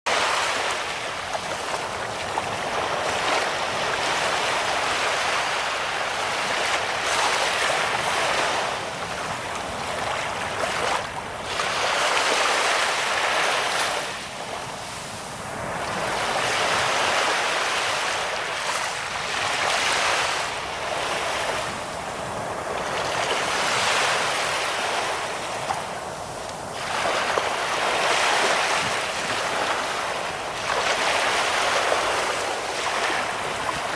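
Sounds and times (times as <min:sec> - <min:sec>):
sea waves breaking on beach: 0:00.1 - 0:33.9.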